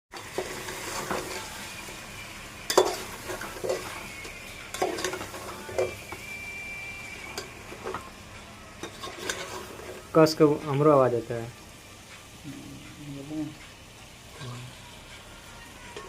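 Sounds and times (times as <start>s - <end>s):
spatula scraping a pan: 0.1s - 1.8s, 2.7s - 6.3s, 8.8s - 10.1s
food sizzling in a pan: 0.1s - 16.0s.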